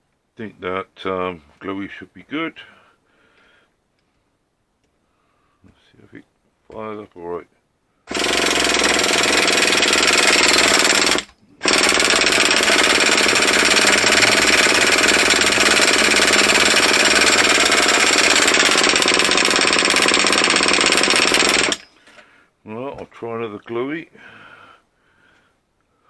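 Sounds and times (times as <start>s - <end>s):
electric starter cranking engine: 8.1s - 22.3s.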